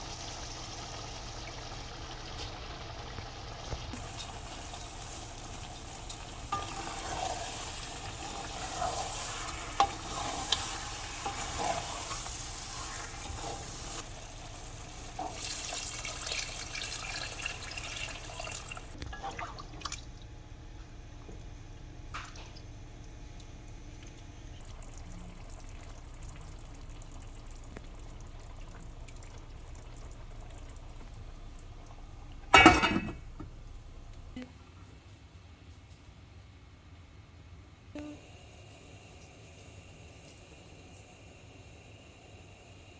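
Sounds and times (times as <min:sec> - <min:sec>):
food sizzling: 0:00.0 - 0:19.0
spoon stirring in a pot: 0:06.1 - 0:14.0.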